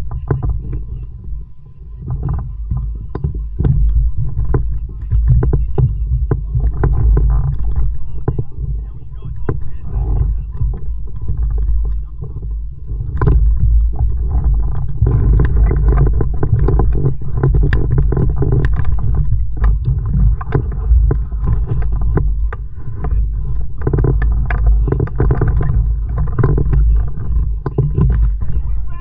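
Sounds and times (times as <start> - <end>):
low rumble of water and wind: 0.0 - 29.0.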